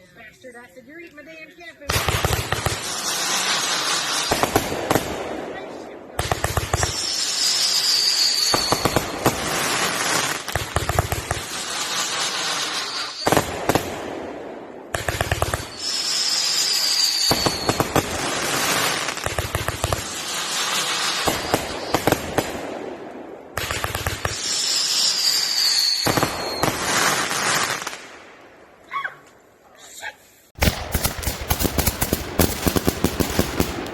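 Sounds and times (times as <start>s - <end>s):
firework bangs and crackling: 1.9s - 28.3s, 30.6s - 33.9s
firework falling whistle: 6.8s - 9.2s, 12.7s - 13.4s, 15.7s - 18.0s, 24.3s - 27.0s.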